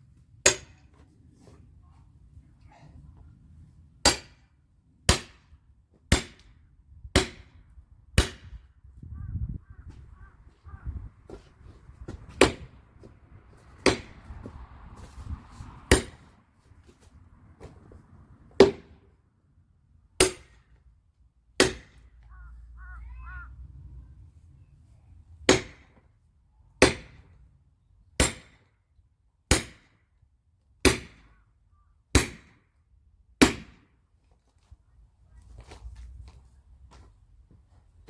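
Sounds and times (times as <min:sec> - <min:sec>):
axe striking firewood: 0:00.4 - 0:00.9, 0:04.1 - 0:04.4, 0:05.1 - 0:05.5, 0:06.1 - 0:06.6, 0:07.2 - 0:07.6, 0:08.2 - 0:08.6, 0:11.3 - 0:15.1, 0:15.9 - 0:16.3, 0:18.6 - 0:19.0, 0:20.2 - 0:20.7, 0:21.6 - 0:22.0, 0:25.5 - 0:26.0, 0:26.8 - 0:27.2, 0:28.2 - 0:28.6, 0:29.5 - 0:29.9, 0:30.9 - 0:31.2, 0:32.1 - 0:32.6, 0:33.4 - 0:33.9.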